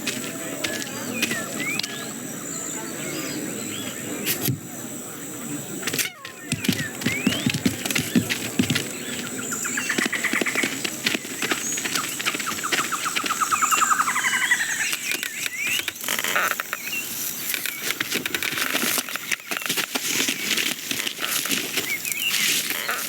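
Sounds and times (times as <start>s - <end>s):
dense rustling and clicking: 5.8s - 14.2s, 14.8s - 23.0s.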